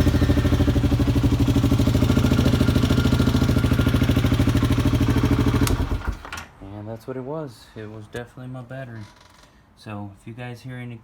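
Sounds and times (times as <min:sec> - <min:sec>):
atv engine idling: 0:00.0 - 0:06.2.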